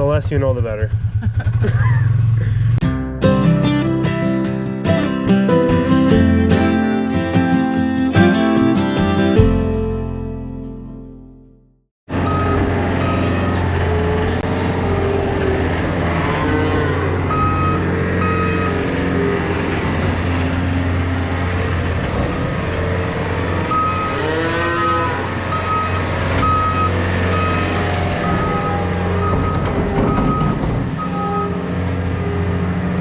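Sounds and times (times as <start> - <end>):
cattle mooing: 13.9 - 20.0, 23.7 - 30.6.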